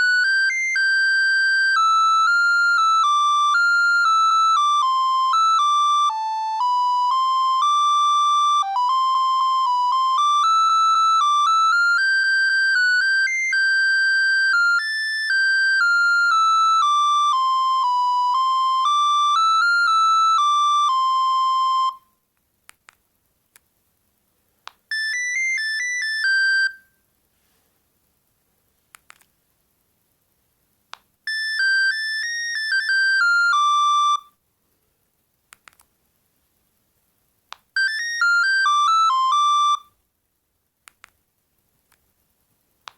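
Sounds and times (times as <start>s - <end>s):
phone ringtone tune: 0.0s - 22.0s, 24.9s - 26.8s, 31.3s - 34.3s, 37.8s - 39.9s
faint clicks: 35.5s - 35.9s, 40.8s - 41.2s.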